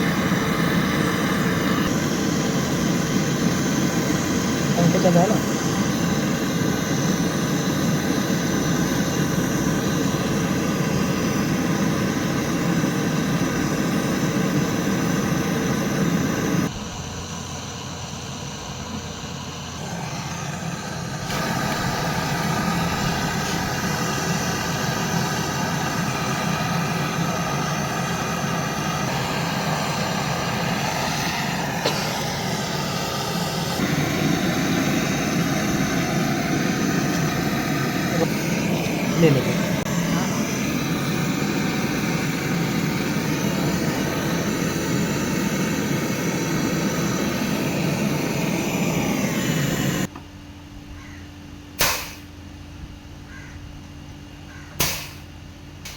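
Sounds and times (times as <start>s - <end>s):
machine motor droning: 0.0s - 50.1s
sharp click: 51.8s - 52.3s, 54.8s - 55.3s.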